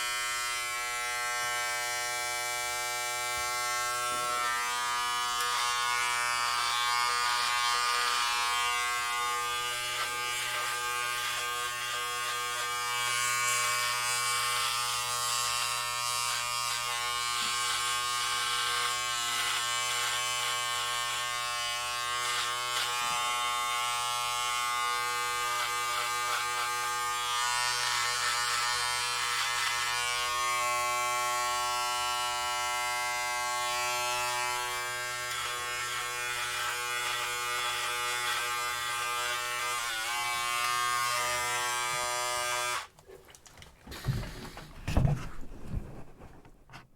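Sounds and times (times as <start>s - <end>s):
electric hair clippers buzzing: 0.0s - 43.0s
clipper blades rasping through hair: 3.4s - 31.0s, 33.0s - 43.0s.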